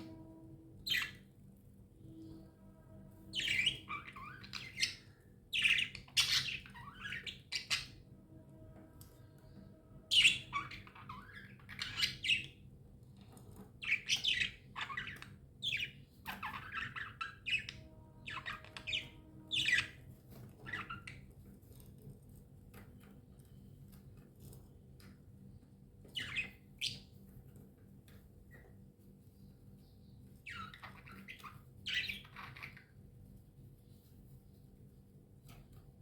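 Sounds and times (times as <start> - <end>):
budgerigars chirping: 3.3 - 5.0, 5.6 - 8.0, 10.1 - 12.6, 13.8 - 20.0, 26.1 - 27.0, 30.5 - 32.9.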